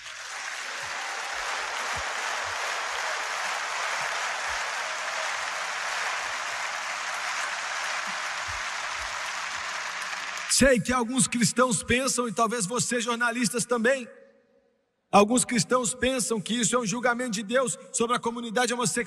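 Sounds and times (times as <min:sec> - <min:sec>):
large audience applauding: 0:00.0 - 0:10.7.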